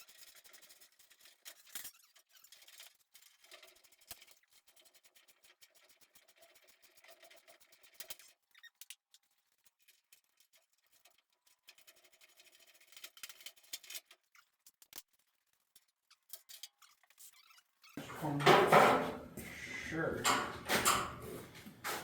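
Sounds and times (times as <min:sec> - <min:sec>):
faint clicks and ticks: 0:00.0 - 0:18.0
light scraping: 0:16.7 - 0:22.0.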